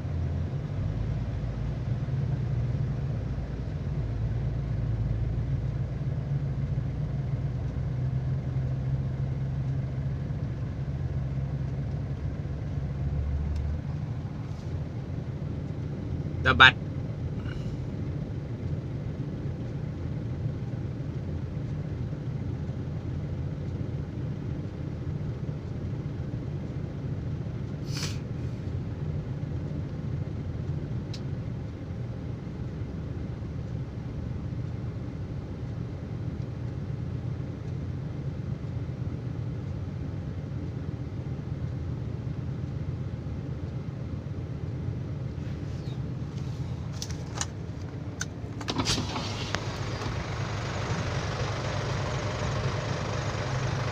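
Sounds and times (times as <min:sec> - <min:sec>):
diesel truck engine running: 0:00.0 - 0:53.9.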